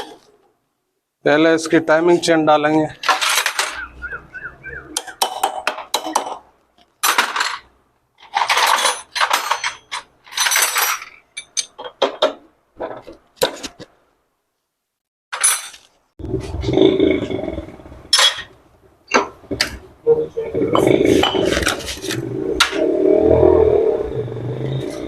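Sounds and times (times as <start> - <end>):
metal tools clinking and clattering: 3.0 - 3.8, 7.0 - 12.2, 15.3 - 15.9.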